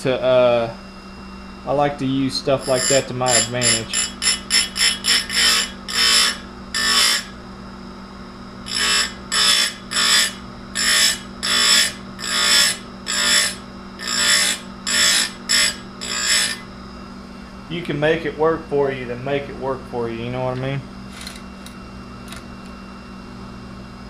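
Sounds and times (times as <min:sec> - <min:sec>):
chain grinder motor humming: 0:02.6 - 0:07.4, 0:08.6 - 0:16.7, 0:21.0 - 0:22.7.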